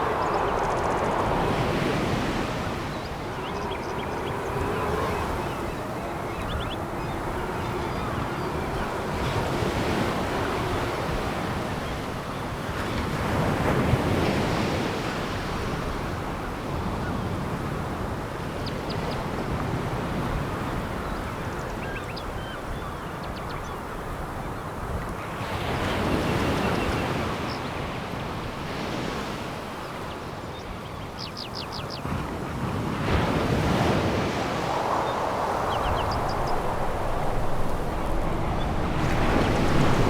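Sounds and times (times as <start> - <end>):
waves breaking on pebble beach: 32.5 - 40.0.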